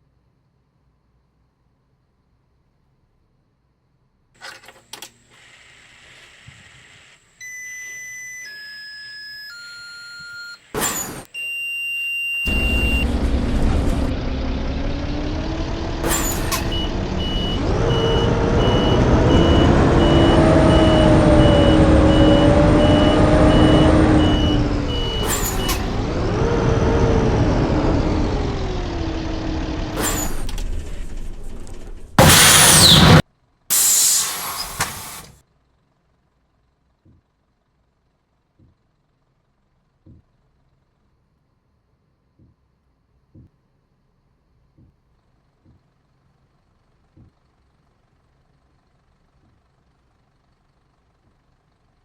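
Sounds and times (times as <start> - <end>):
fast warning beep: 11.4 - 14.0, 16.0 - 26.3
electronic chime tones: 12.5 - 13.9
bus engine running: 12.5 - 40.0.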